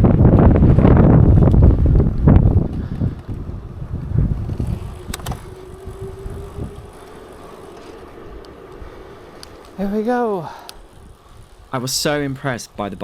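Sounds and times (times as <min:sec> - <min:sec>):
wind buffeting the microphone: 0:00.0 - 0:11.7
sharp clicks: 0:04.3 - 0:08.8.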